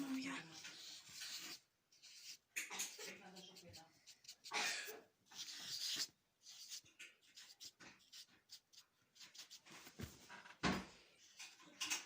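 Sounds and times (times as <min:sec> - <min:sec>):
pen scratching on paper: 0:00.0 - 0:10.0.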